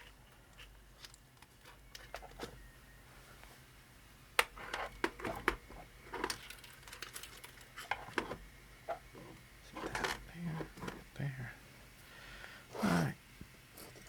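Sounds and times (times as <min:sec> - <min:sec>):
plastic parts rattling: 0:04.6 - 0:08.4.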